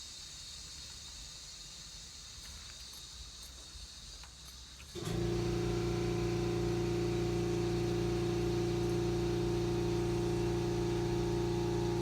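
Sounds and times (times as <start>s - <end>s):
steady machine hum: 5.1s - 12.0s.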